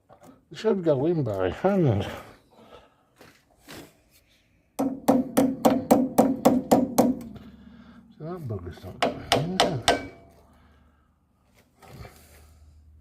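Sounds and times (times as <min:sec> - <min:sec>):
ringing taps on metal: 0:09.0 - 0:10.4.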